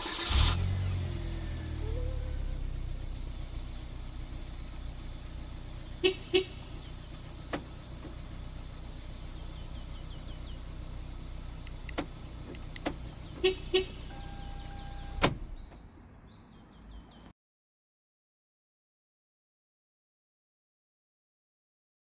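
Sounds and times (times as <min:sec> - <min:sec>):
car engine idling: 0:00.0 - 0:15.9
car horn chirps: 0:05.9 - 0:06.9, 0:13.3 - 0:15.4.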